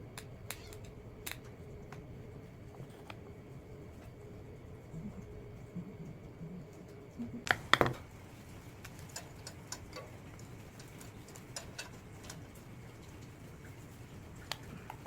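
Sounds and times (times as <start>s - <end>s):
light ticks and taps: 8.8s - 13.3s.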